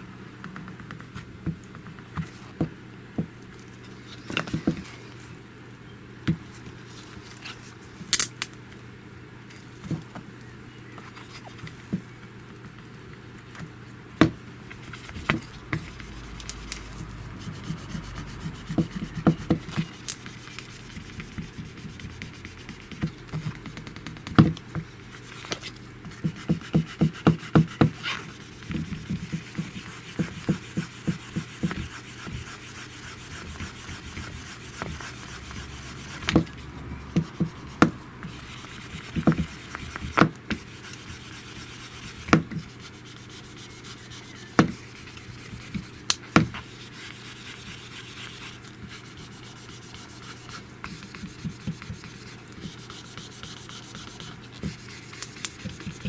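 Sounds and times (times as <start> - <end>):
rubbing on screen protector: 14.7 - 56.0.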